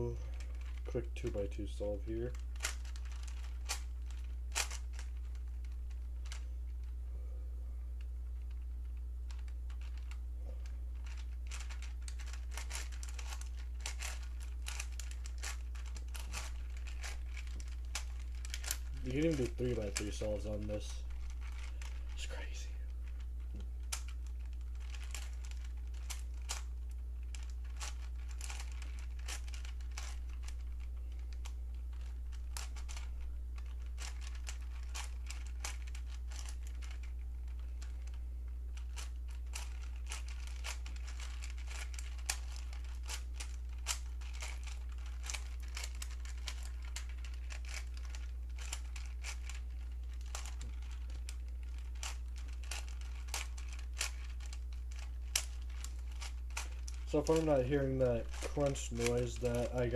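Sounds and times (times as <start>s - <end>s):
puzzle cube clicking and scraping: 0.0s - 7.0s, 9.3s - 59.9s
steady low hum: 0.0s - 59.9s.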